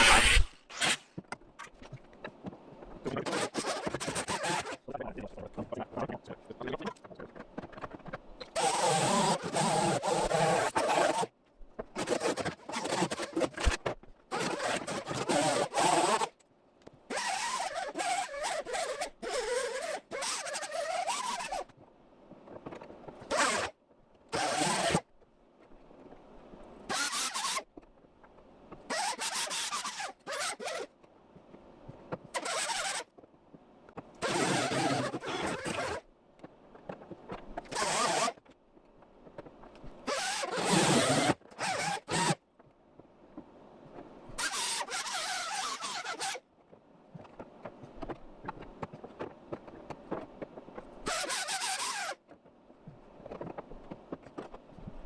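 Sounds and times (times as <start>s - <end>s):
welder crackling arc bursts: 0.0s - 1.1s.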